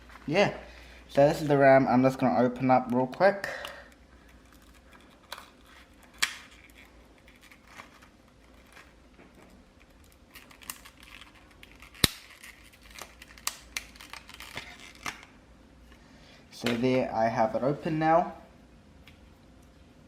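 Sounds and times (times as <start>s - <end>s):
plastic packaging clicks and rustling: 2.9s - 15.3s
sharp plastic snap: 12.0s - 12.3s.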